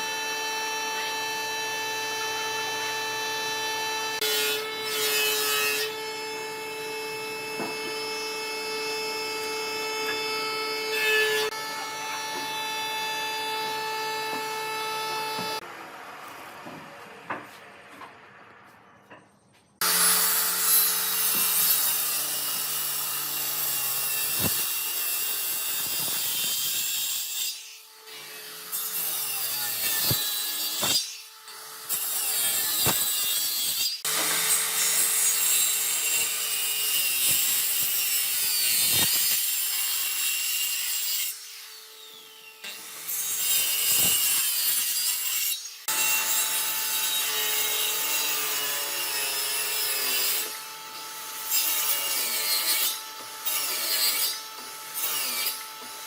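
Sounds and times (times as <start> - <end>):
power tool grinding wood: 19.8 - 56.0.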